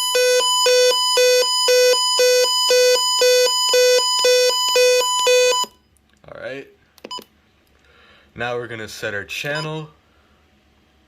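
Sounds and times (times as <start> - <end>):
two-tone radio alarm: 0.0 - 5.8.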